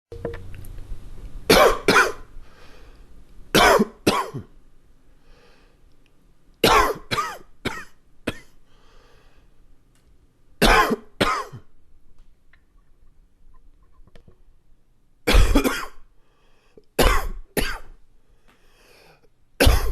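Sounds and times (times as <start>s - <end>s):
man coughing: 1.5s - 2.2s, 3.6s - 4.5s, 6.6s - 8.6s, 10.6s - 11.6s, 15.3s - 16.0s, 17.0s - 17.9s, 19.6s - 19.9s.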